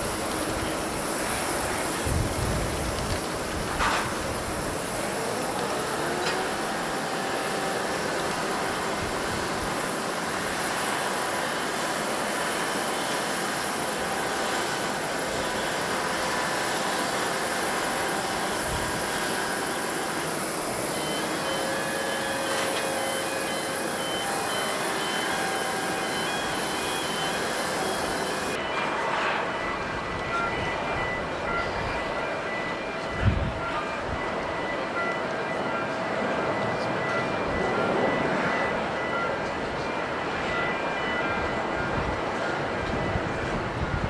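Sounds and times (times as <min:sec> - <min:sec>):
jet engines roaring: 0:00.0 - 0:40.6
broken high tone: 0:20.8 - 0:41.9.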